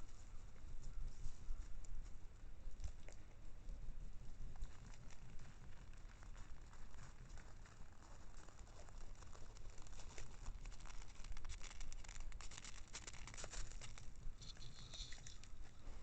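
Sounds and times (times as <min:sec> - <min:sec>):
scratchy rustling with clicks: 0:09.3 - 0:16.0.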